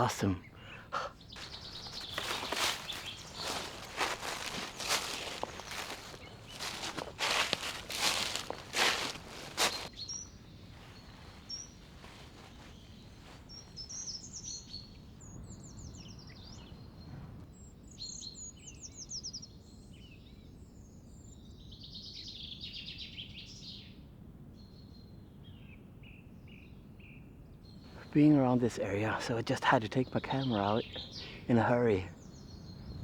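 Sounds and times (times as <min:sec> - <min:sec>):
songbirds singing: 0:00.0 - 0:33.0
footsteps: 0:01.4 - 0:09.9, 0:10.8 - 0:13.5.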